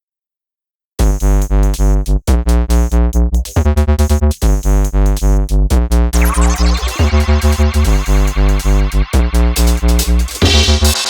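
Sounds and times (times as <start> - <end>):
drum machine beat: 1.0 - 11.0
electronic music with synthesizer: 6.2 - 11.0.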